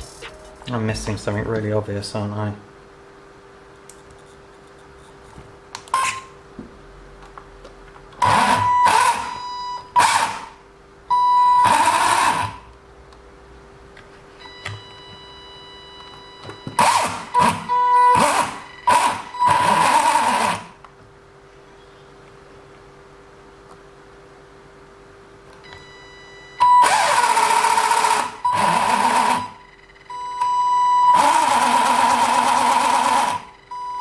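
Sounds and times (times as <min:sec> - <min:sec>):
rc car drivetrain whine: 0:16.8 - 0:20.7, 0:26.8 - 0:29.6, 0:31.1 - 0:33.5.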